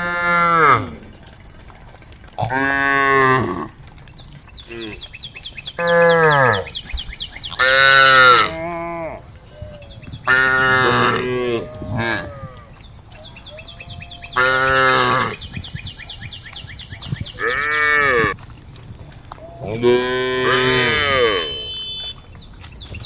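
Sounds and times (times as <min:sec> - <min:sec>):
cows mooing: 0:00.0 - 0:01.4, 0:02.3 - 0:03.9, 0:05.7 - 0:06.8, 0:07.5 - 0:09.4, 0:10.2 - 0:15.5, 0:17.3 - 0:18.4, 0:19.5 - 0:22.2.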